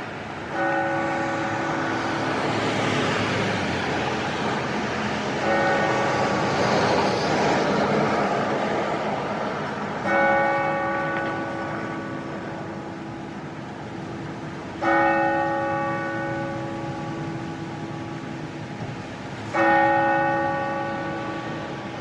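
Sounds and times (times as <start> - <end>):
clock bell striking: 0.0 - 3.1, 5.4 - 6.6, 10.0 - 22.0
steady rushing background noise: 0.0 - 22.0.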